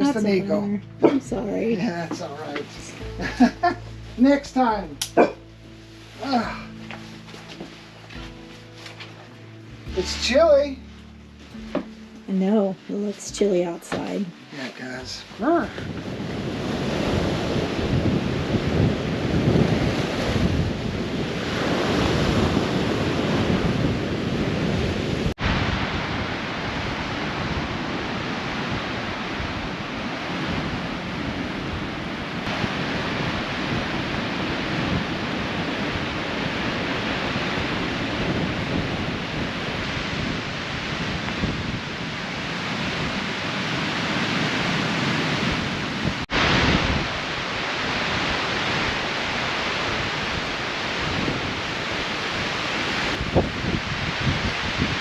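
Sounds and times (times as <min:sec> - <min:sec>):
storm wind gusting: 0:15.3 - 0:55.0
surf breaking: 0:32.4 - 0:55.0.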